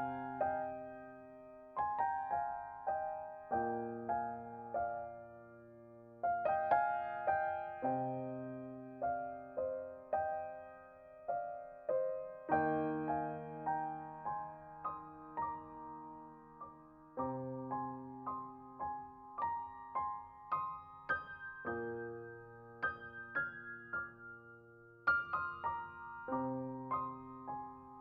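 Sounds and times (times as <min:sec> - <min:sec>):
solo piano piece: 0:00.0 - 0:28.0.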